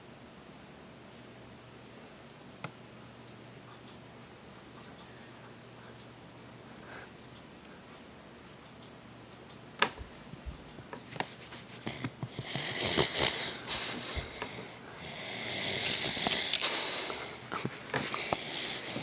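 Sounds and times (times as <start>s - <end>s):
dog snoring: 11.9s - 17.4s.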